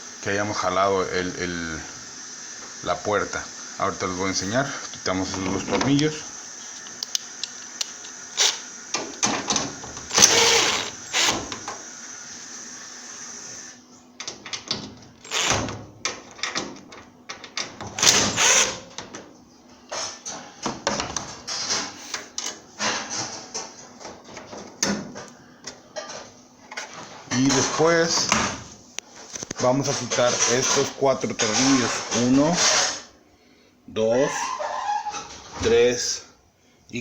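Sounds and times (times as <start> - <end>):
screws and metal panels clicking: 8.0 - 8.6, 9.4 - 11.6, 14.2 - 19.2.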